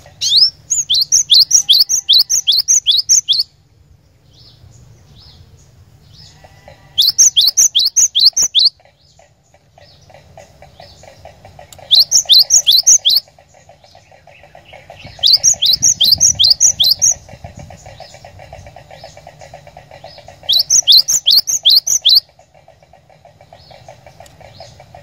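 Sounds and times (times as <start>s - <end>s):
bird whistling downward notes: 7.0s - 8.7s.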